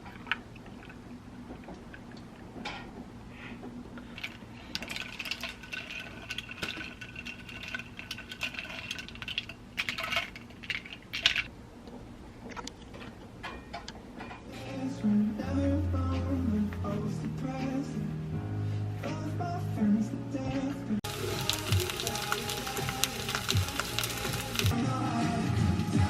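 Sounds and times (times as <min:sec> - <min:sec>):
small hard objects clinking: 0:04.1 - 0:11.5, 0:21.0 - 0:24.8.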